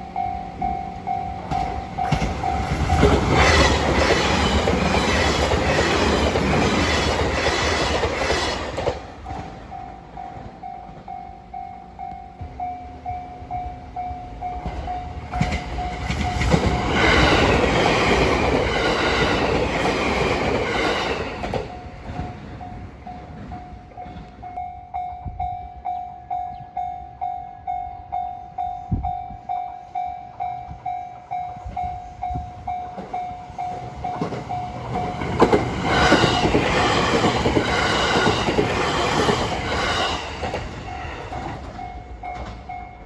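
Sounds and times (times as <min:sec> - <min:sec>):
train wheels clattering: 0:01.3 - 0:11.3, 0:14.2 - 0:24.6, 0:31.7 - 0:43.0.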